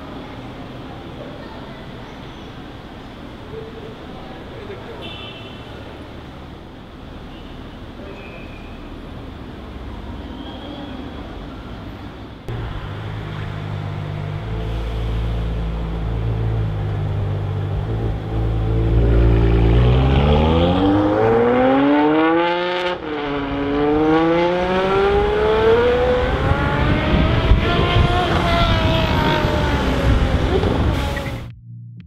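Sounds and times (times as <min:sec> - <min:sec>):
car engine accelerating: 0:12.5 - 0:31.6.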